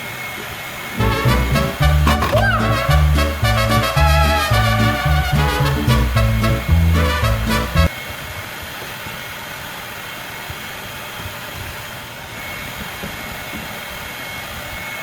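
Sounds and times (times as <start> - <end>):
music: 1.0 - 7.9.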